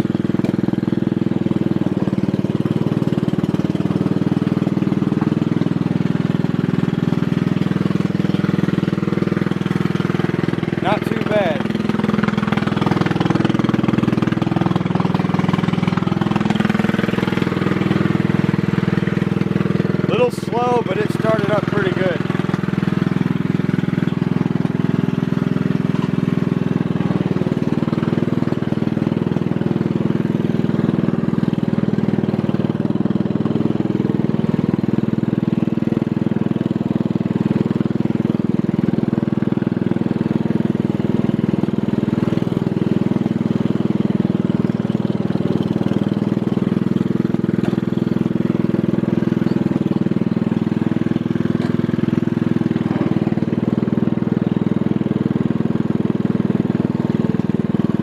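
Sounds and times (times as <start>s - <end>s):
riding lawn mower engine running: 0.0s - 58.0s.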